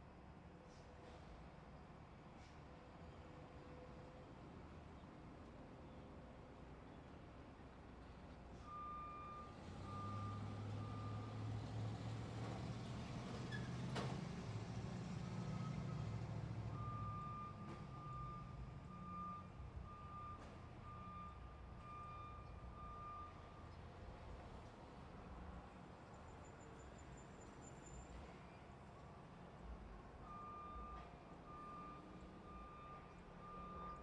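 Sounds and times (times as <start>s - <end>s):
truck reversing alarm beeping: 8.6s - 12.2s, 15.2s - 24.0s, 30.2s - 34.0s.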